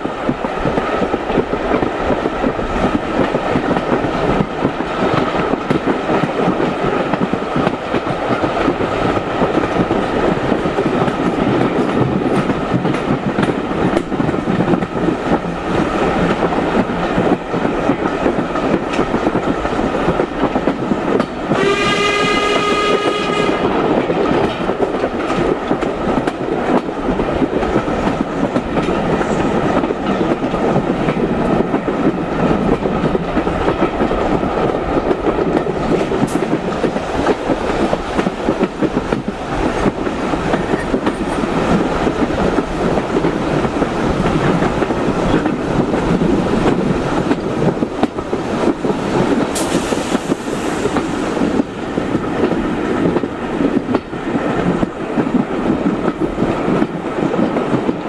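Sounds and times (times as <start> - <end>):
steam train rumbling and rattling: 0.0 - 58.0
steam whistle: 21.5 - 23.7.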